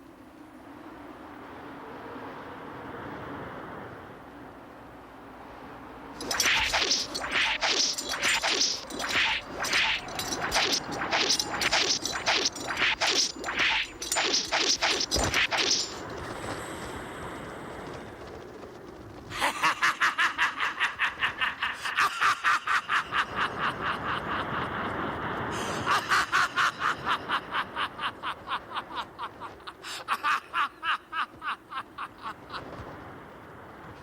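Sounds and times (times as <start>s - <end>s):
person laughing loudly: 19.3s - 32.7s.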